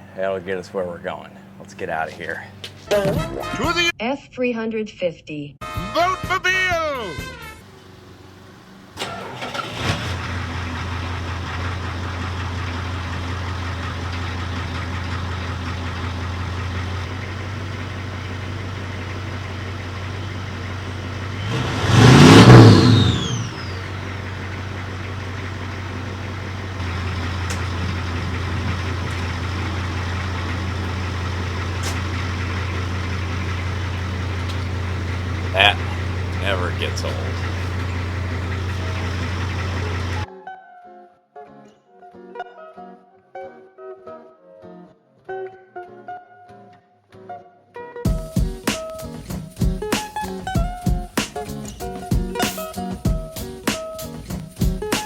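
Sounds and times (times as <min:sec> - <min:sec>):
diesel engine starting and idling: 0:07.6 - 0:40.3
engine revving: 0:09.0 - 0:12.5, 0:21.3 - 0:24.6, 0:26.8 - 0:40.3.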